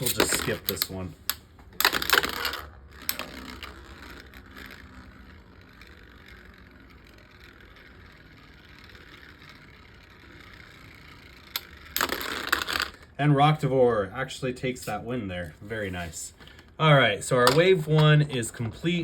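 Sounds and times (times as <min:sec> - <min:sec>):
launcher ratcheting rip: 0:00.0 - 0:13.0
spinning tops grinding and whirring: 0:00.0 - 0:19.0.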